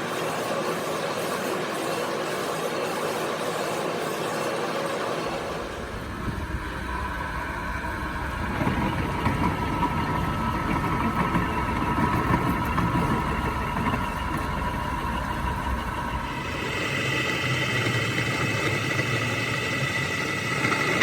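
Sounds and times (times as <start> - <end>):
machine rumbling with a whine: 5.4 - 21.0.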